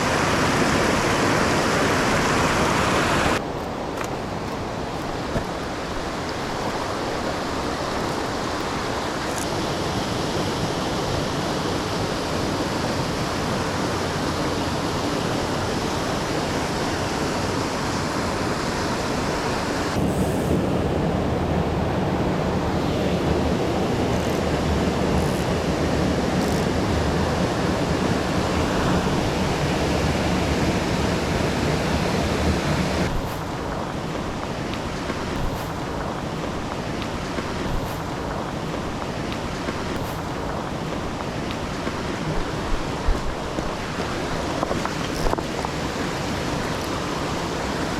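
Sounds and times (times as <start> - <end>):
mountain stream rushing: 0.0 - 47.9.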